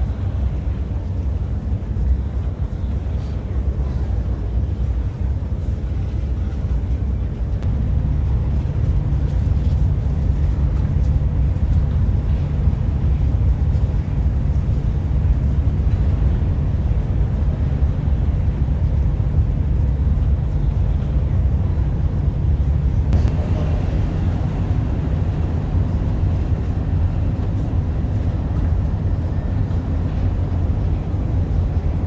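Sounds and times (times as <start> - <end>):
train rumble inside cabin: 0.0 - 32.0.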